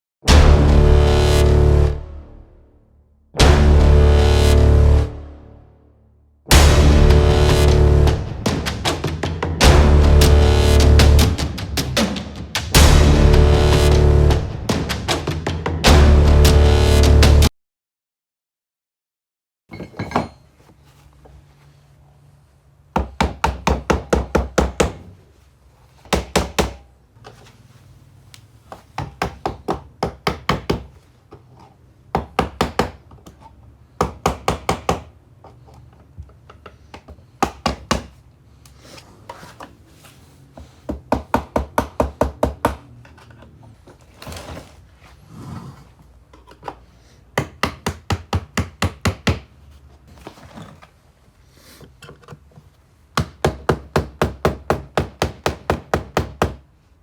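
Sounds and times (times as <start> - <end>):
rapid knocking on hard object: 40.9 - 42.8.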